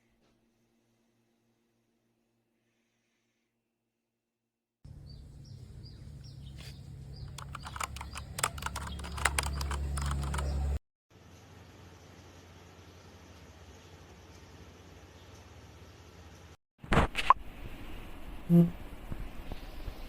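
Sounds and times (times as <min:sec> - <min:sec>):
sharp clicks: 0:07.3 - 0:10.8.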